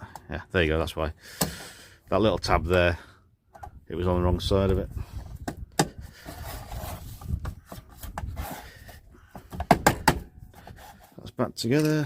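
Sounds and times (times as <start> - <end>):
parts rubbing and scraping: 4.4 - 12.0.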